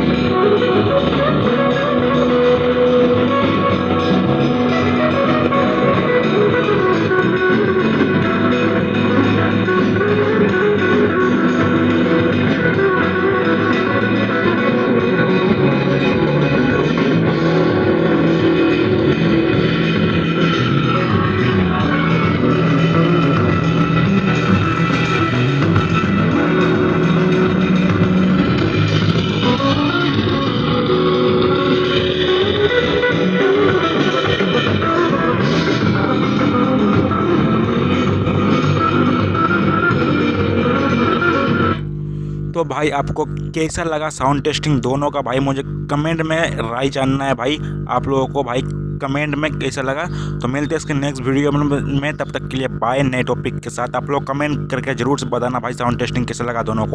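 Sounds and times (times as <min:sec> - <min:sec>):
rock song through speaker: 0:00.0 - 0:41.8.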